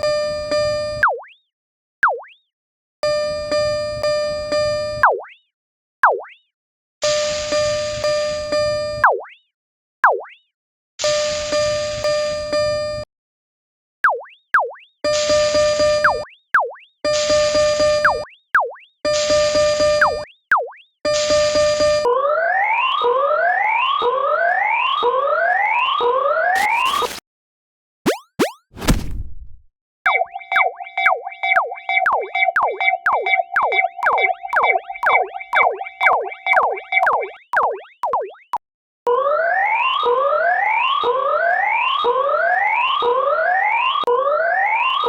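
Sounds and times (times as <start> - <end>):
railroad crossing bell alarm: 0.0 - 1.0, 3.0 - 5.0, 7.0 - 9.0, 11.0 - 13.0, 15.1 - 16.2, 17.1 - 18.2, 19.1 - 20.2, 21.1 - 26.7, 39.1 - 45.0
warped wobbly alarm tones: 26.4 - 27.2, 30.1 - 38.6.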